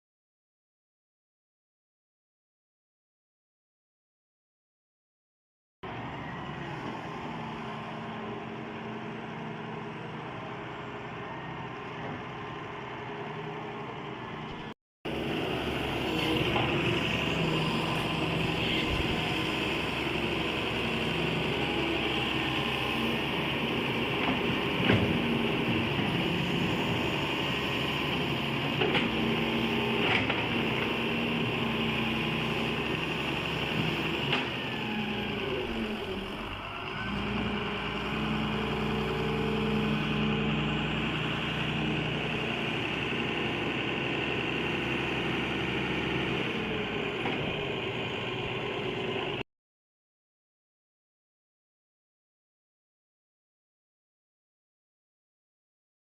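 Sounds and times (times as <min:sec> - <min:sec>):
excavator engine running: 0:05.9 - 0:49.4.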